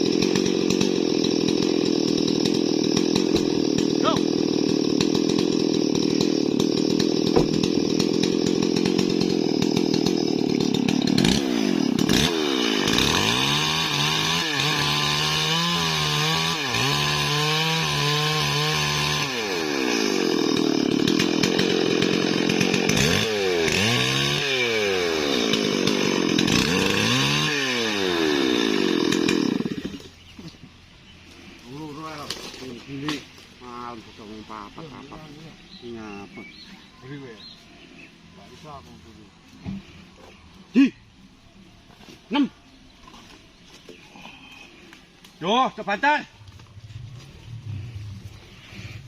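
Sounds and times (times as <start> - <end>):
chainsaw cutting wood: 0.0 - 30.7, 31.4 - 35.1.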